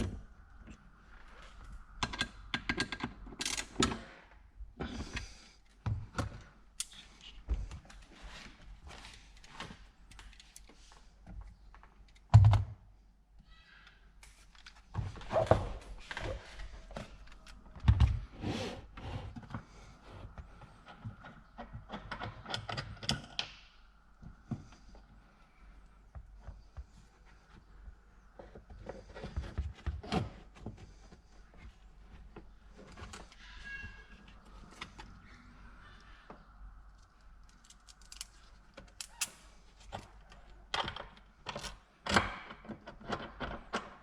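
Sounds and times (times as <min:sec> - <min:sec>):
tools and trim clicking and rattling: 0:36.9 - 0:39.4.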